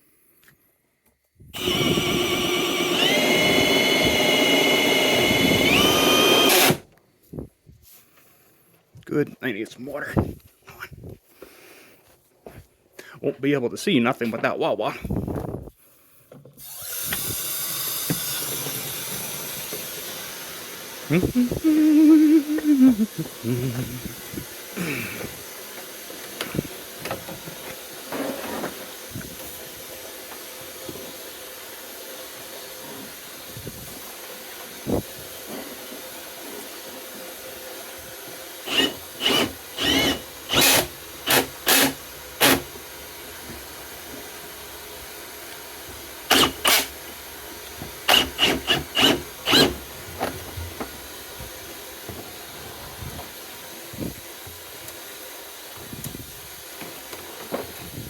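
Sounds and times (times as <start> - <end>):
drill whining in bursts: 1.6 - 6.9, 16.6 - 23.4, 38.6 - 43.0, 46.3 - 47.0, 48.0 - 49.9.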